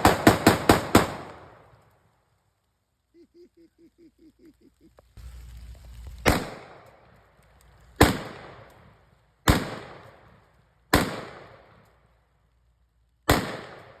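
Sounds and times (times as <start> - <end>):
echoing gunshots: 0.0 - 1.7, 6.2 - 7.0, 8.0 - 11.9, 13.3 - 14.0.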